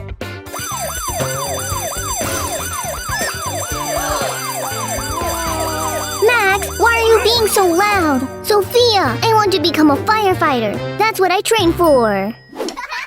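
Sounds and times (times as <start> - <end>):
siren yelping: 0.5 - 8.5.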